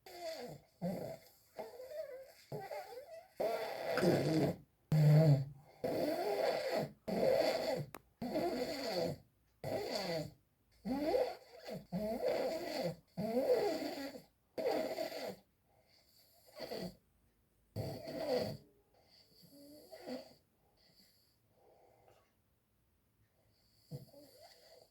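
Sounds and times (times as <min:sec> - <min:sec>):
person snoring: 0:03.9 - 0:05.4.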